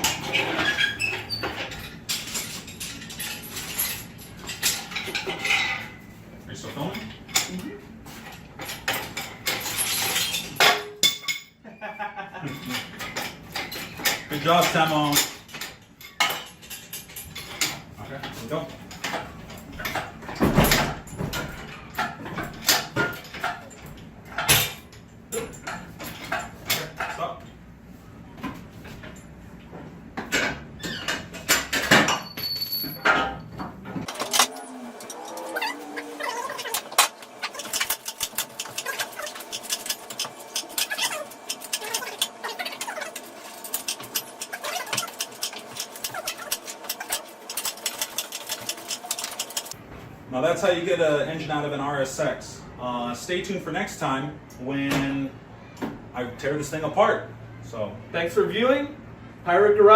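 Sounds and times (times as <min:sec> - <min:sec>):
metal clinking and rattling: 0:00.0 - 0:06.0, 0:06.9 - 0:11.6, 0:30.3 - 0:49.8
metal clanks and scrapes: 0:00.0 - 0:11.6, 0:12.4 - 0:27.3, 0:30.2 - 0:49.8.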